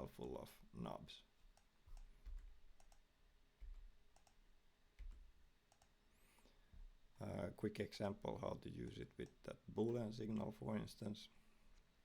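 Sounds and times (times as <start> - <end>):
computer mouse clicks: 1.5 - 3.0, 3.7 - 4.4, 5.0 - 6.0.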